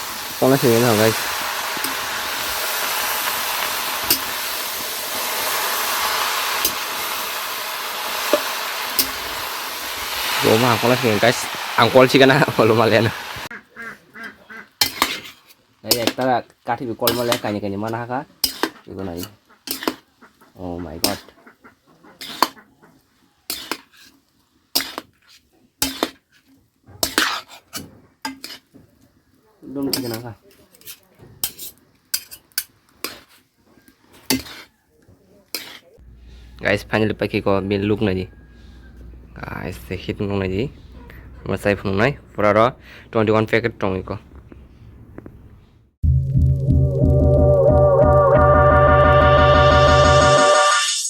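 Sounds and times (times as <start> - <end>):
food sizzling in a pan: 0.0 - 13.6, 14.2 - 21.4, 22.2 - 29.1, 29.8 - 34.7, 35.4 - 36.0
metal utensil scraping a pot: 0.8 - 6.0, 14.2 - 16.3, 17.0 - 21.4, 22.1 - 22.6, 23.5 - 28.8, 29.9 - 34.8, 35.5 - 36.5.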